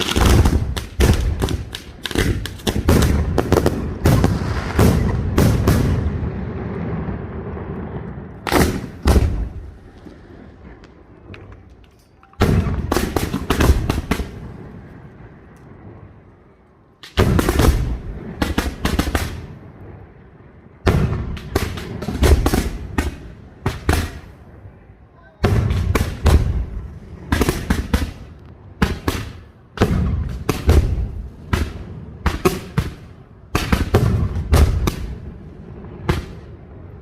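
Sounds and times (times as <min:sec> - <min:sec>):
echoing rumble: 0:00.0 - 0:11.7.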